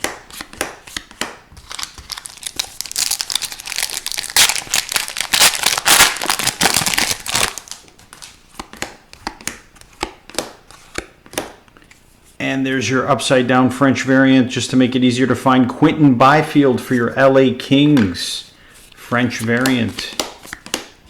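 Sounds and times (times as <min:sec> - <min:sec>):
card handling clicks and rustles: 0:00.4 - 0:10.4
foil wrapper crinkling and tearing: 0:01.6 - 0:07.9.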